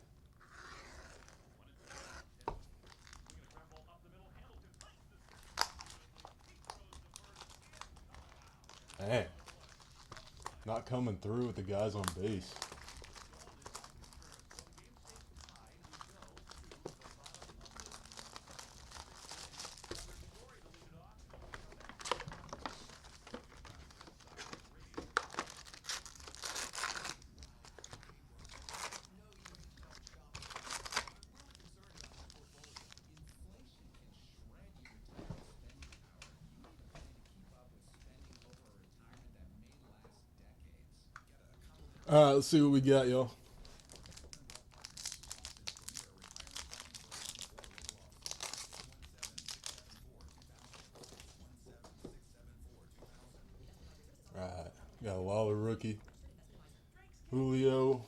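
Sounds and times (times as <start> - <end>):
foil wrappers crinkling and tearing: 0.6 - 3.8, 4.7 - 33.6, 37.9 - 38.8, 41.7 - 52.2.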